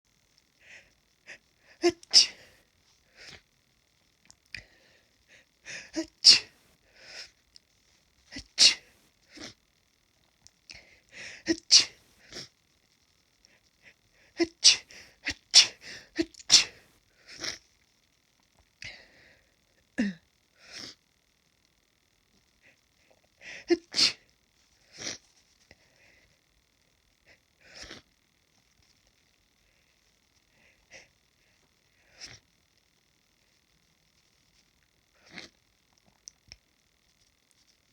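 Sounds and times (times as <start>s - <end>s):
person sneezing: 1.8s - 2.6s, 5.7s - 6.6s, 8.3s - 8.9s, 11.2s - 12.0s, 14.4s - 16.8s, 23.6s - 24.2s
voiced catch of breath: 10.8s - 11.5s
person sniffing: 14.4s - 17.6s.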